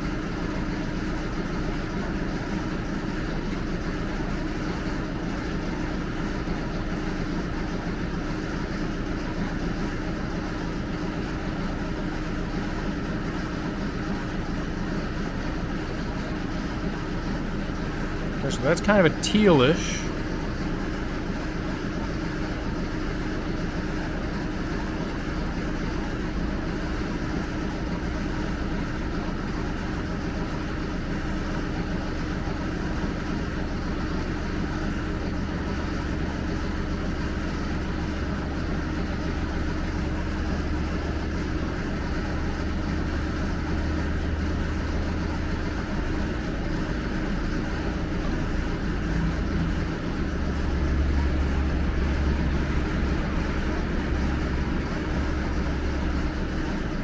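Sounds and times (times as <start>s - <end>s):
low machine hum: 47.8s - 57.0s.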